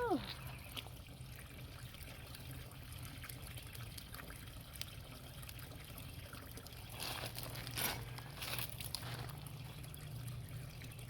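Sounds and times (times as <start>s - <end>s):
pond water trickling: 0.0s - 11.0s
water splashing and sloshing: 0.0s - 11.0s.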